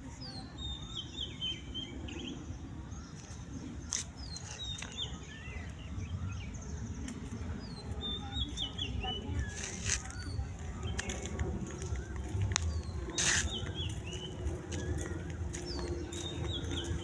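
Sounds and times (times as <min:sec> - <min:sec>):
steady low rumble: 0:00.0 - 0:17.0
birds chirping and whistling: 0:00.2 - 0:17.0.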